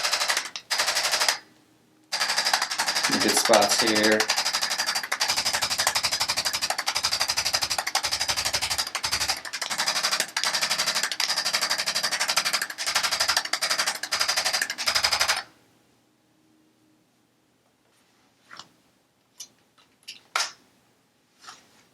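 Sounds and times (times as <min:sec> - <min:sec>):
percussion device hammering: 0:02.2 - 0:15.4.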